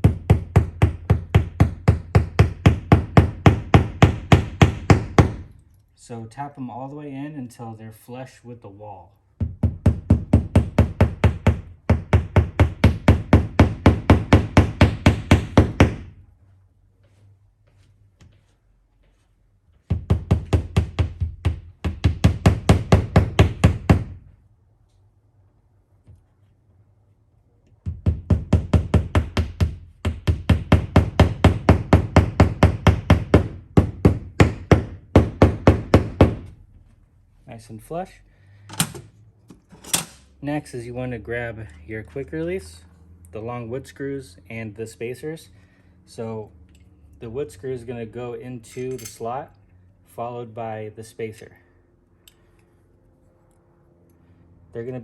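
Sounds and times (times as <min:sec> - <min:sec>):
mallet knocking wall anchor: 0:00.0 - 0:05.5, 0:09.4 - 0:16.1, 0:19.9 - 0:24.2, 0:27.8 - 0:36.5.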